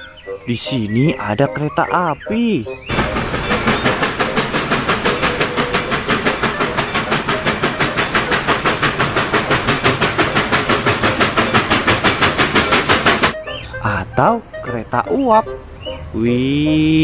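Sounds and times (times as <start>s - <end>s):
steam train chuffing: 2.8s - 13.4s.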